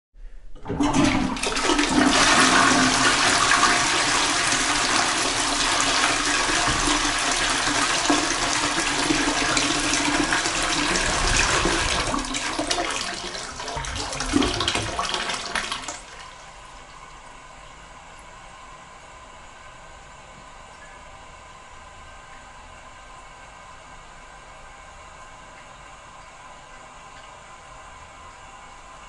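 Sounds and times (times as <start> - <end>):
toilet flushing: 0.5 - 17.3.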